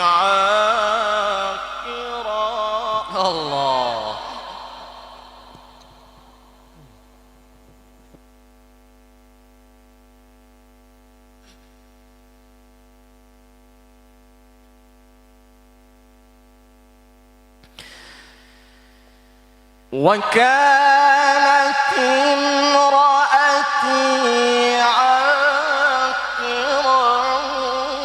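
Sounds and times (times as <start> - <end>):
chanted voice echoing: 0.0 - 7.3, 19.9 - 28.0
electrical mains hum: 0.0 - 28.0.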